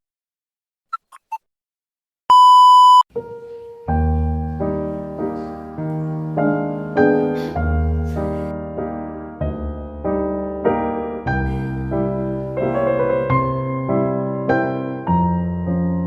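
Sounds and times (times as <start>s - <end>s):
electronic beep: 2.3s - 3.0s
electric piano music with bass: 3.2s - 16.0s.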